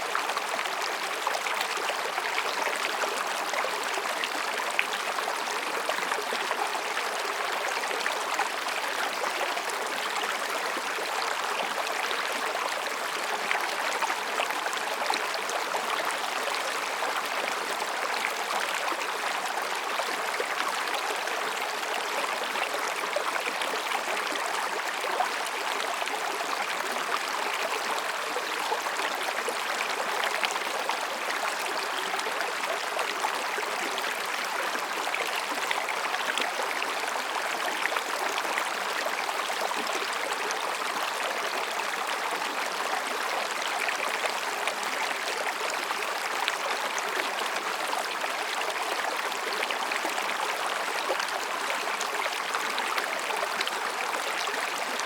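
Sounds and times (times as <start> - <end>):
stream babbling over rocks: 0.0 - 55.0.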